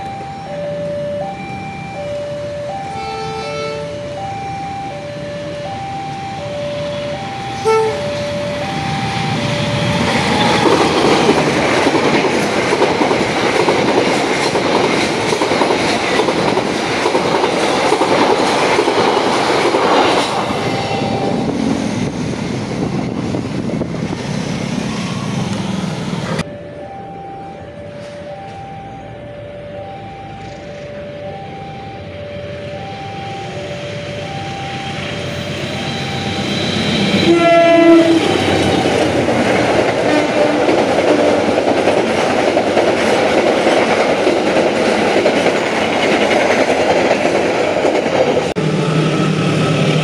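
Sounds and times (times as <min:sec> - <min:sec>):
level-crossing bell ringing: 0:00.0 - 0:11.1, 0:26.4 - 0:37.4
train passing: 0:00.0 - 0:50.0
train horn blast: 0:02.9 - 0:04.0, 0:07.5 - 0:08.2, 0:36.4 - 0:39.1, 0:40.0 - 0:41.5.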